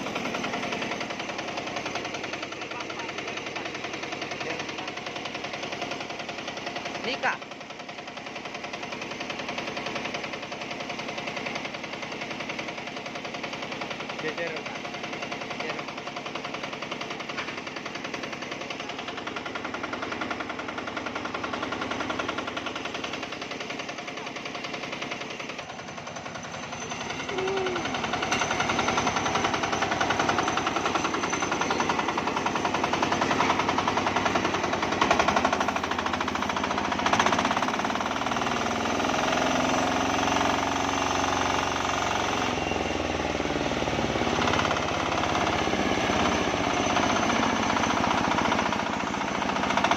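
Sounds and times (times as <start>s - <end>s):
diesel engine running: 0.0s - 49.9s.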